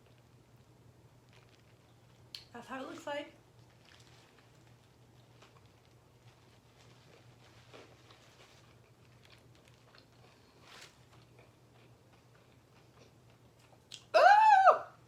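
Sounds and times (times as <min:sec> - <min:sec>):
soft chewing: 0:00.0 - 0:02.5, 0:03.4 - 0:14.1
person exclaiming in delight: 0:14.2 - 0:14.9.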